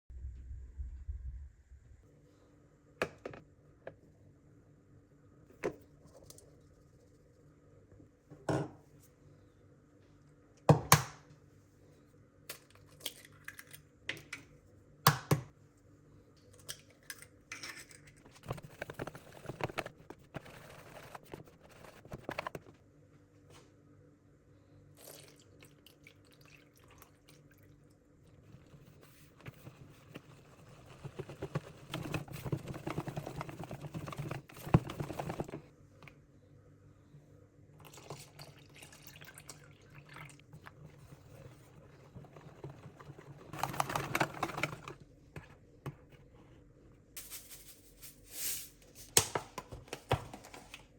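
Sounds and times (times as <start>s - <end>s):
faint low hum: 0.1s - 10.7s
batter stirring: 17.2s - 22.7s, 26.9s - 35.7s, 40.4s - 46.6s.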